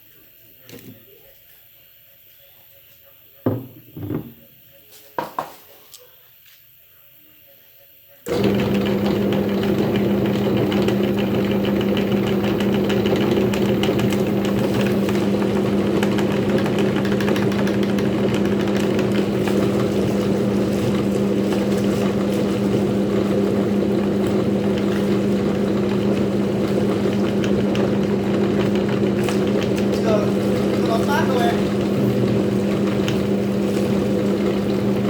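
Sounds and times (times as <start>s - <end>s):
electric meat grinder motor hum: 8.3s - 35.0s.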